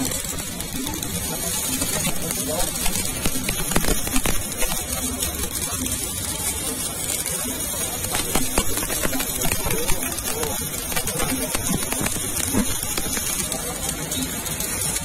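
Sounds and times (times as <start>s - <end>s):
sharp pops: 0.0s - 5.7s, 7.9s - 13.6s
welding arc crackling and sizzling: 0.0s - 15.0s.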